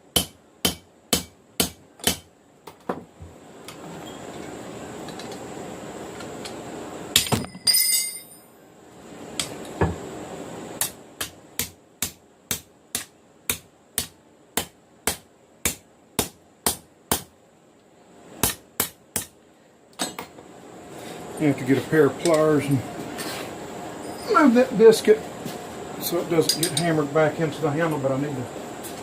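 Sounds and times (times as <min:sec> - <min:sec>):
hammer striking steel punch: 0:00.1 - 0:02.3, 0:10.8 - 0:17.3, 0:18.4 - 0:19.3.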